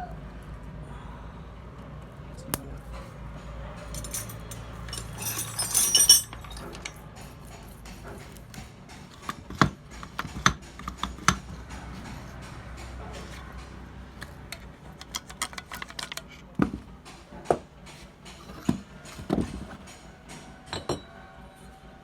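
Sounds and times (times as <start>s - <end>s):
metal tools clinking and tapping: 3.8s - 7.2s, 9.2s - 11.8s, 12.8s - 16.4s, 18.3s - 21.2s.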